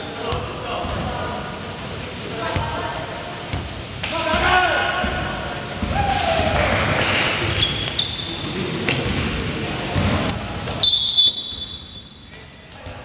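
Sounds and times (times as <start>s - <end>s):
balls bouncing and thudding: 3.5s - 10.8s
short high squeaks: 7.6s - 9.0s.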